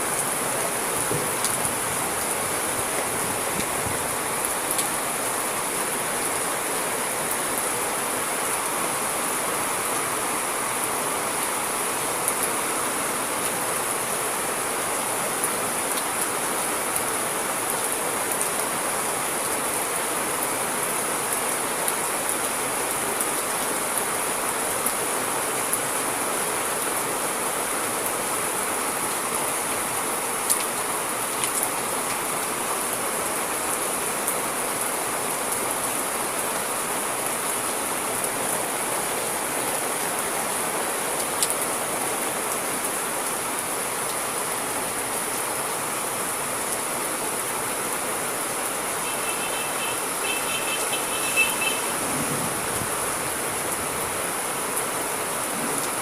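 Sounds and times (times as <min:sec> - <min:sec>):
rain falling steadily: 0:00.0 - 0:56.0
raindrop taps: 0:01.0 - 0:01.8.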